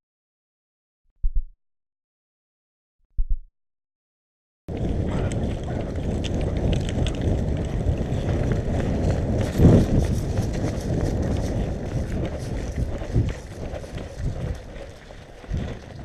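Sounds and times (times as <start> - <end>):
footsteps: 4.7 - 16.0
rustling rattling gear: 4.8 - 16.0.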